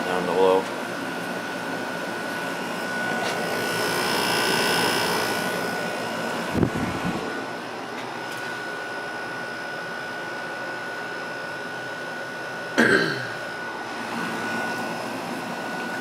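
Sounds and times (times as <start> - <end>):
air conditioner humming: 0.0 - 16.0.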